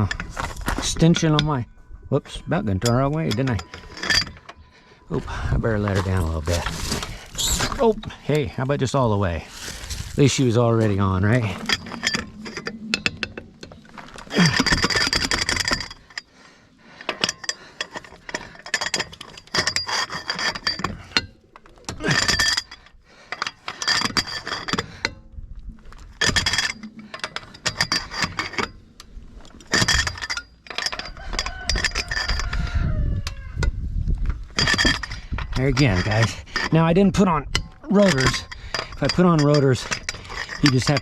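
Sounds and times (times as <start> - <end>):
metal clinks of tools: 2.6 - 4.6, 17.0 - 25.2, 34.5 - 36.9, 37.5 - 41.0.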